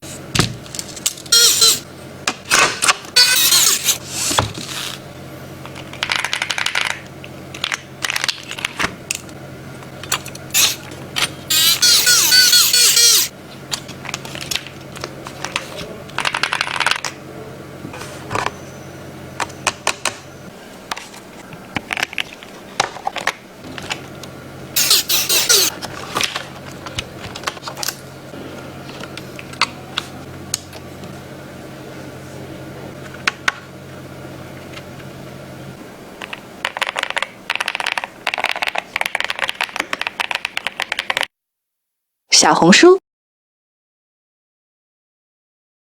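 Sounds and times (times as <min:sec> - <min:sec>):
steady low hum: 0:00.0 - 0:36.6
plastic keyboard parts clicking: 0:36.2 - 0:41.3.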